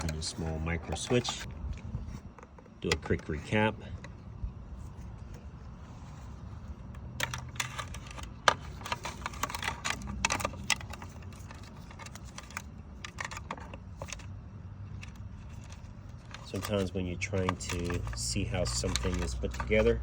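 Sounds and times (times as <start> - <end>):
plastic clicks and rattles: 6.9 - 14.3, 14.9 - 19.9.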